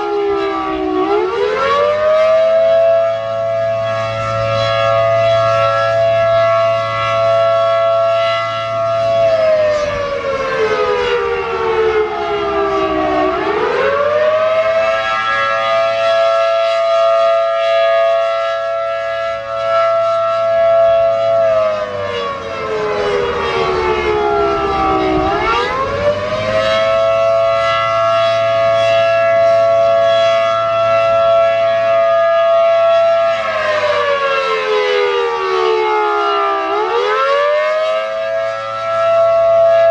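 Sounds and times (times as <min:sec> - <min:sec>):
siren wailing: 0:00.0 - 0:39.9.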